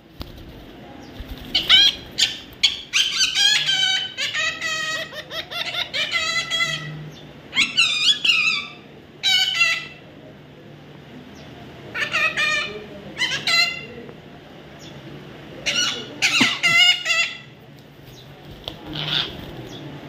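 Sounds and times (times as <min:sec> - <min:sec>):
parrot chattering: 0:01.5 - 0:06.9.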